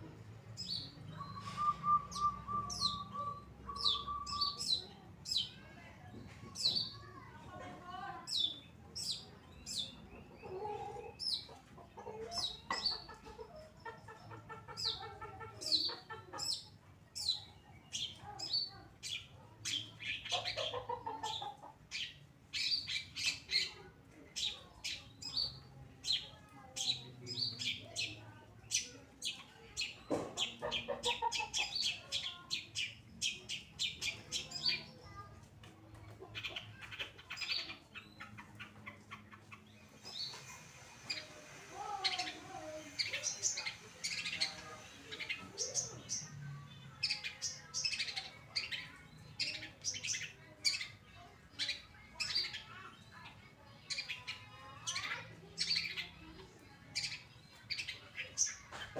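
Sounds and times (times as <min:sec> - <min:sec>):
bird chirping rapidly: 0:00.6 - 0:05.6.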